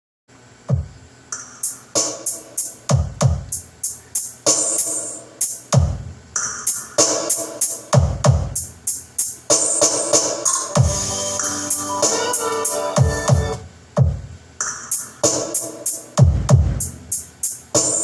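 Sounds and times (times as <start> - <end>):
electronic dance music: 1.4 - 13.6.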